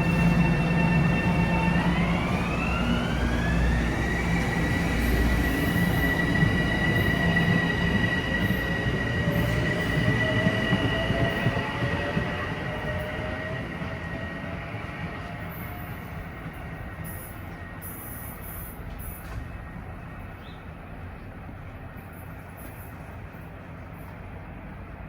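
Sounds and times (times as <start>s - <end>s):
electric train motors whining: 0.0s - 19.5s
wheels rumbling on rail: 0.0s - 25.0s.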